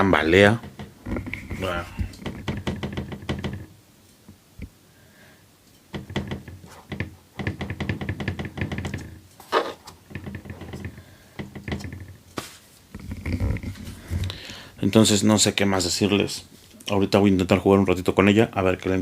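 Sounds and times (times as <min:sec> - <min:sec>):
cooktop knocking against table: 0:05.9 - 0:09.2.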